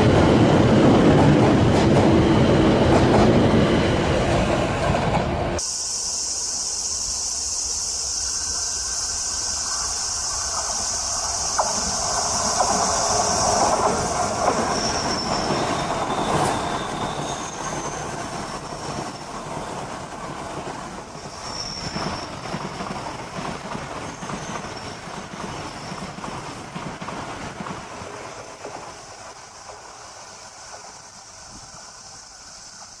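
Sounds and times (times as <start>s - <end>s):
train wheels rumbling on rails: 0.0s - 5.8s, 6.7s - 33.0s
high-pitched wheel squeals: 11.4s - 19.4s, 21.2s - 22.6s, 24.0s - 26.2s.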